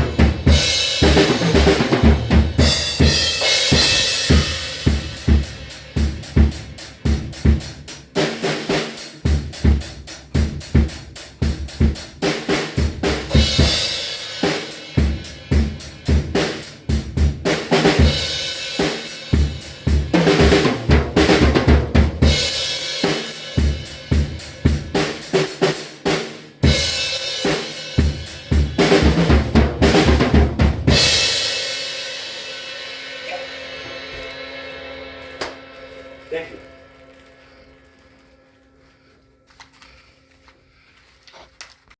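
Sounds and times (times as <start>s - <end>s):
hi-hat and cymbal wash: 0.0s - 20.6s, 22.2s - 29.3s
drum fills: 0.0s - 37.8s.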